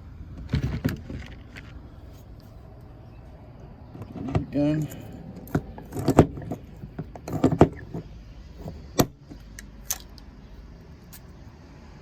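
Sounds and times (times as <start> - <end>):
rivet tool metallic clicks: 8.6 - 10.3.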